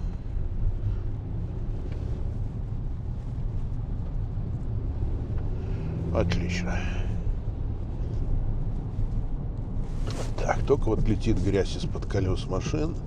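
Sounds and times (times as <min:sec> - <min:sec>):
car engine and tyres rumble: 0:00.0 - 0:13.0.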